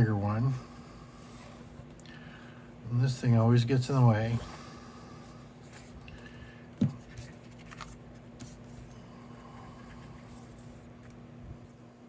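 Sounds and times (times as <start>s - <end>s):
steady low hum: 0.0s - 12.0s
paper card rustling: 6.8s - 8.9s.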